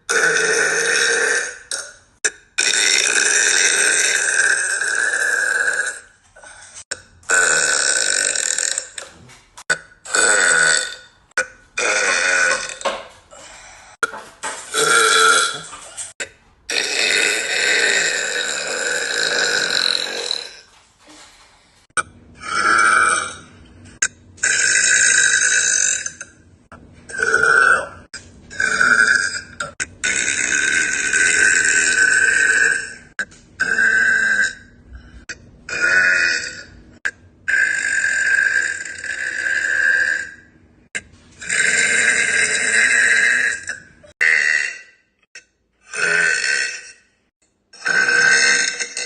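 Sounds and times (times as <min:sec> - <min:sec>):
woman burping loudly: 0:00.1 - 0:02.0, 0:02.6 - 0:06.6, 0:07.3 - 0:09.1, 0:09.7 - 0:20.6, 0:22.4 - 0:23.5, 0:27.1 - 0:34.7, 0:35.7 - 0:36.7, 0:37.5 - 0:40.5, 0:41.4 - 0:45.0, 0:45.9 - 0:47.0, 0:47.8 - 0:49.0.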